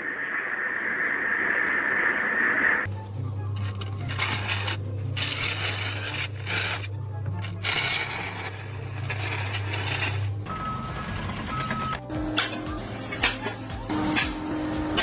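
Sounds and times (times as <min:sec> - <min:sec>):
scraping noise: 0:03.4 - 0:15.0.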